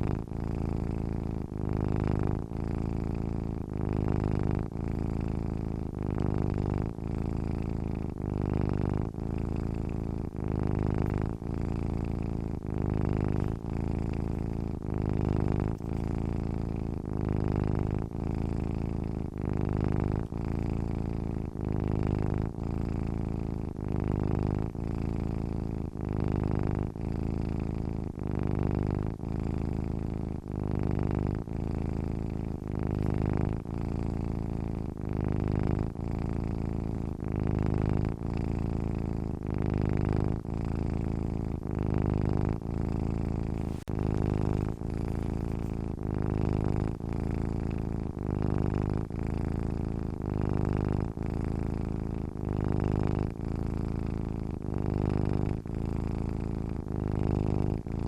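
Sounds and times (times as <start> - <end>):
cat purring: 0.0 - 58.0.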